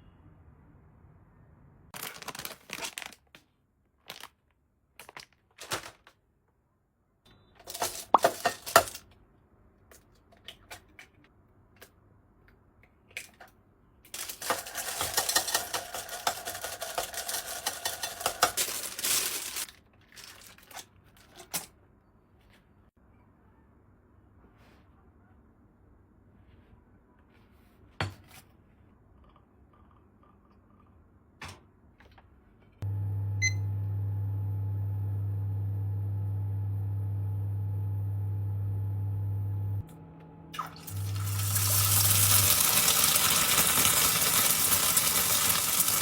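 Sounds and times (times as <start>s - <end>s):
crinkling handling noise: 2.0s - 6.2s, 7.6s - 9.1s, 14.1s - 21.8s, 40.8s - 46.0s.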